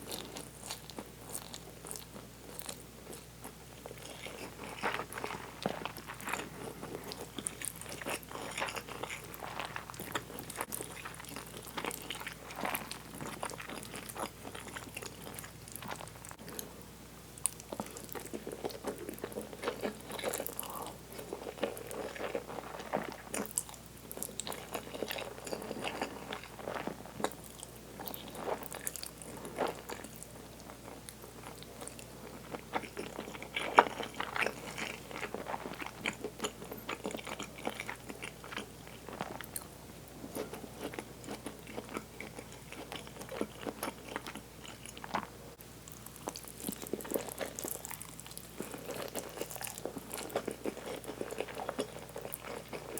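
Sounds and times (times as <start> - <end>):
person chewing food: 0.0 - 16.8, 17.4 - 52.9.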